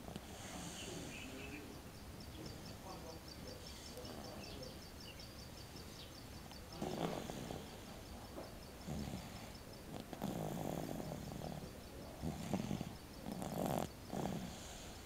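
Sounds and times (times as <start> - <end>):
rattling snores: 0.0 - 1.7, 6.5 - 15.0.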